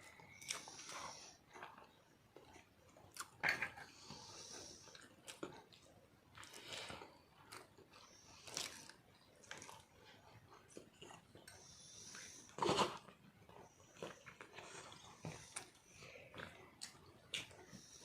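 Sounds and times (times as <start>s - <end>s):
breathing: 3.8s - 5.0s, 11.5s - 12.6s, 14.6s - 16.5s
chewing and biting food: 4.5s - 18.0s.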